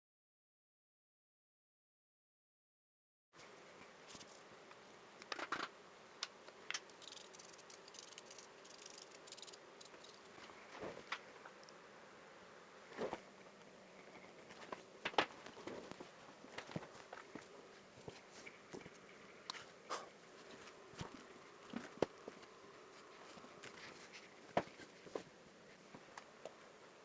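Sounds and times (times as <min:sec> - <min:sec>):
faint steady hiss: 0:03.4 - 0:27.0.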